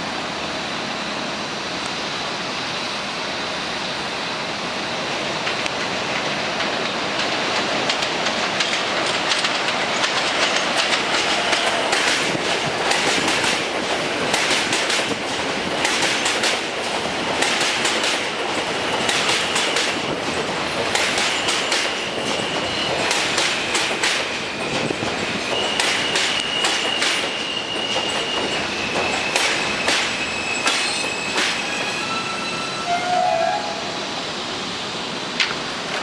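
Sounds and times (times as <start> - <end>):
subway train wheels clicking: 0.0 - 36.0
high wheel squeal: 21.3 - 34.0.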